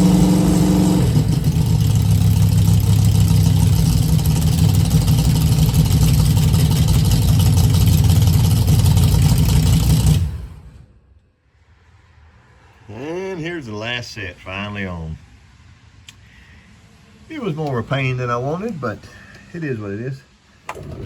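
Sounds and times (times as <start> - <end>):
car engine idling: 0.0 - 11.3.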